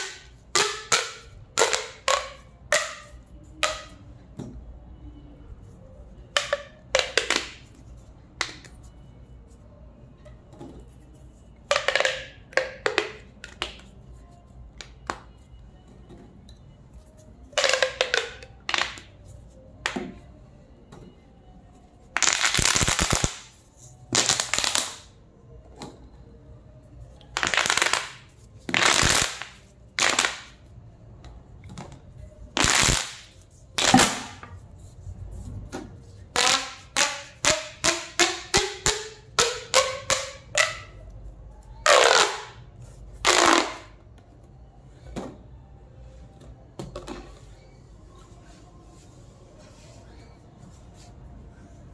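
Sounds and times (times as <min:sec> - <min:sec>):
plastic pop tubes popping: 0:00.0 - 0:04.6, 0:06.3 - 0:07.8, 0:08.4 - 0:08.8, 0:11.6 - 0:13.9, 0:14.8 - 0:15.3, 0:17.6 - 0:19.2, 0:19.8 - 0:20.2, 0:22.2 - 0:25.2, 0:27.3 - 0:30.7, 0:32.6 - 0:34.6, 0:36.3 - 0:41.0, 0:41.8 - 0:42.6, 0:43.2 - 0:44.0.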